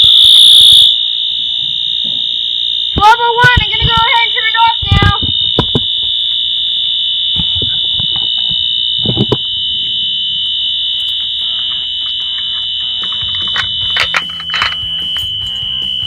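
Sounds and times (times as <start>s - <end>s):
fire alarm horns: 0.0s - 16.0s
knocks: 4.8s - 6.2s.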